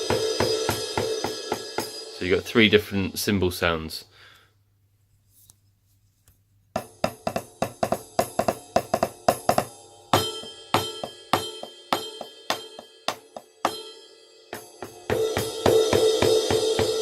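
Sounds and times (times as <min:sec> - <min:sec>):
drum beat: 0:00.0 - 0:02.2, 0:06.8 - 0:13.9, 0:14.5 - 0:17.0
cymbal crash ringing: 0:00.0 - 0:02.6, 0:07.5 - 0:17.0.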